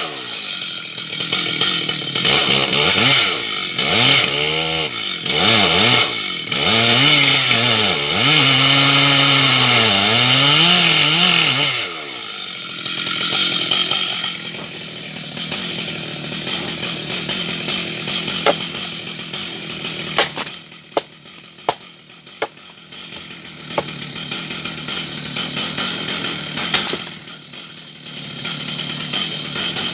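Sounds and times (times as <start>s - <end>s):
chainsaw cutting at high revs: 0.0s - 29.9s
sharp cracks: 26.6s - 27.1s.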